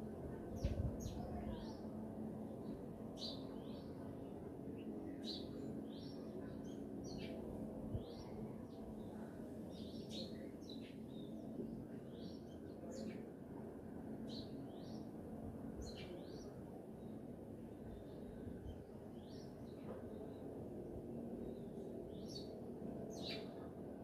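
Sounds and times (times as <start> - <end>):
small birds chirping: 2.6 - 7.4, 21.4 - 23.6.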